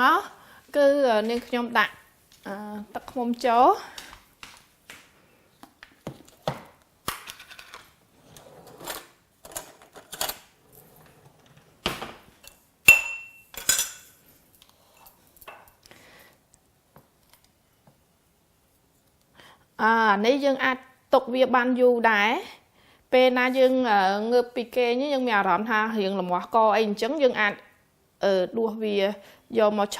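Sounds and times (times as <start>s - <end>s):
spoon clinking containers: 12.4s - 14.2s.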